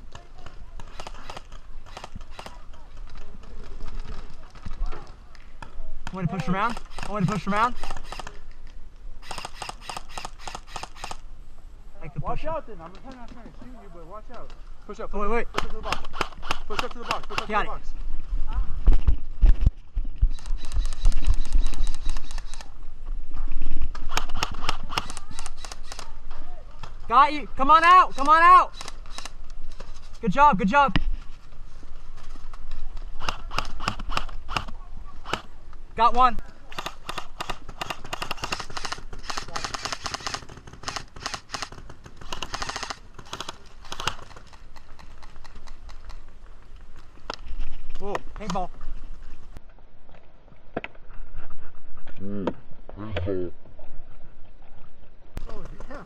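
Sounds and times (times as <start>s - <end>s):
airsoft guns firing: 36.7s - 45.1s.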